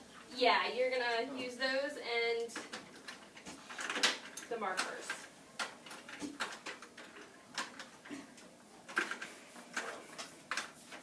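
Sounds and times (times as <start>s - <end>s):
markers clicking and tapping: 2.4s - 11.0s.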